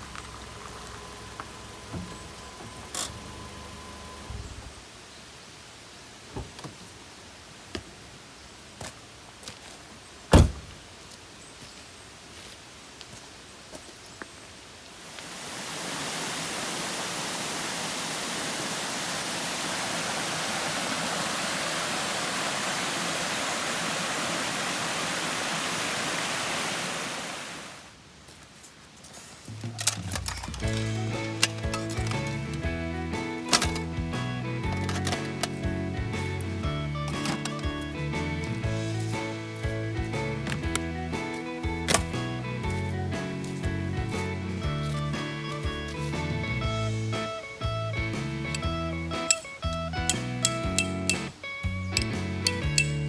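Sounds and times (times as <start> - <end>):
steady rushing hiss: 14.4 - 29.6, 30.6 - 53.0.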